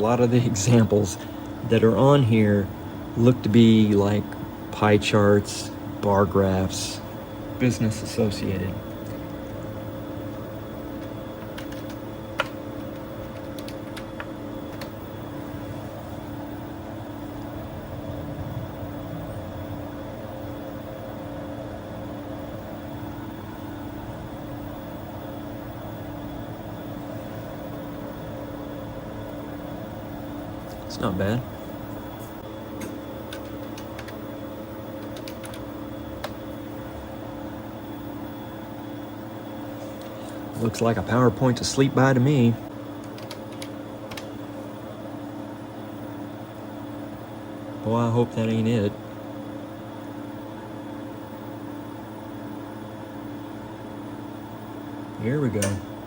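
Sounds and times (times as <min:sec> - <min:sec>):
computer humming: 0:00.0 - 0:56.0
computer clicks: 0:11.0 - 0:15.0, 0:32.8 - 0:34.2, 0:35.0 - 0:36.5, 0:43.0 - 0:44.3.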